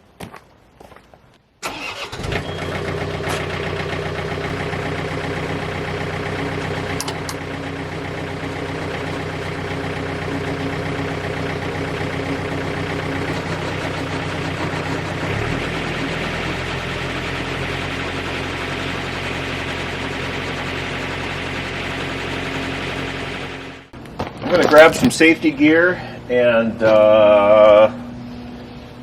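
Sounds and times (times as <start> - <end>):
tractor engine running: 1.6 - 25.5
wood chipper: 2.1 - 23.9.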